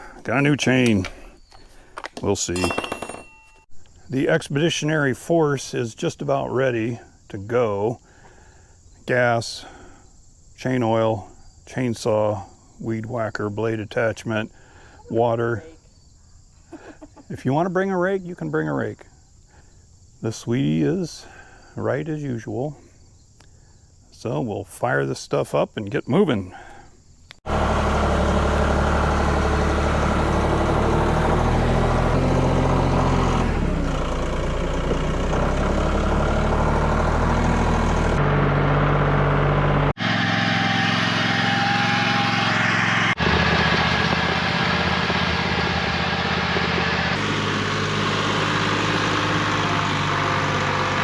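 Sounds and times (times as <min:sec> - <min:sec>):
tractor engine running: 0:27.4 - 0:51.0.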